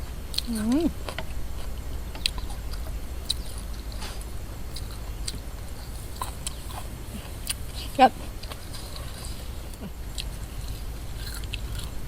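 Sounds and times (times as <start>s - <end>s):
steady low hum: 0.0s - 12.0s
person chewing: 0.3s - 12.0s.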